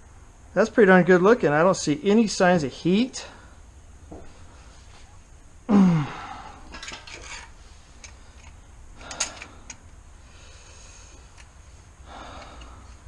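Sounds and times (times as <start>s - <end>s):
metal parts clinking and rattling: 6.7s - 9.6s.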